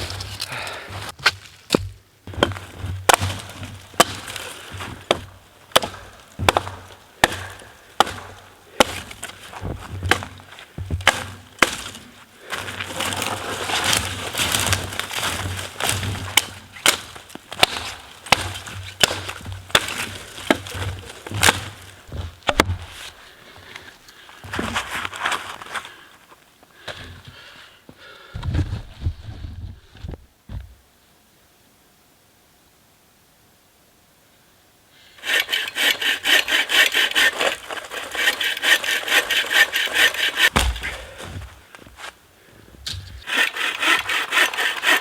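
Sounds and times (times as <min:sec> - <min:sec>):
wood being chopped: 0:01.2 - 0:12.1, 0:13.8 - 0:23.2, 0:36.8 - 0:41.9.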